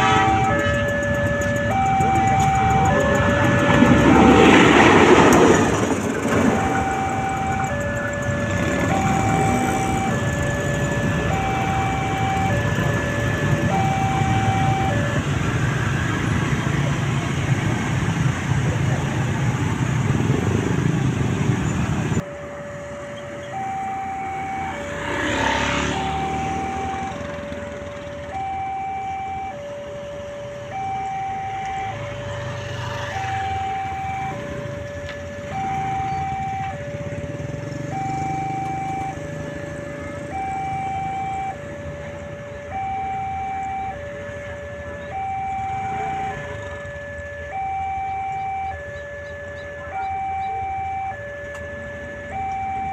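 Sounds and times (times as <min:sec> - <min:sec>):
level crossing warning siren: 0:00.0 - 0:52.9
loud vehicle rumble: 0:00.0 - 0:52.9
vehicle passing by: 0:01.2 - 0:22.8, 0:23.5 - 0:29.3, 0:30.7 - 0:41.9.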